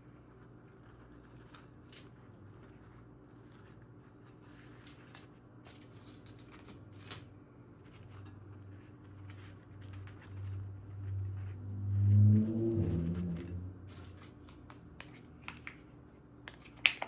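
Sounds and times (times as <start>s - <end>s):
steady low hum: 0.0s - 16.5s.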